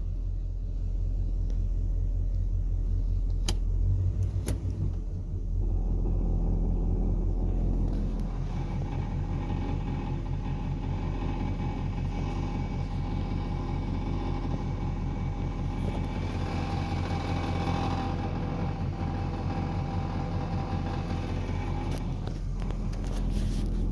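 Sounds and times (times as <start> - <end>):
car engine low pulsing rumble: 0.0 - 23.9
faint steady whine: 4.9 - 23.9.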